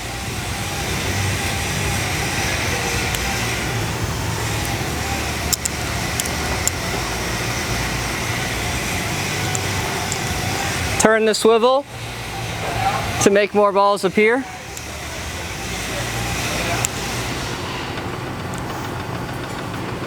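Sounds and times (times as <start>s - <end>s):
steady background hum: 0.0s - 20.0s
sharp metallic clicks: 1.7s - 7.9s.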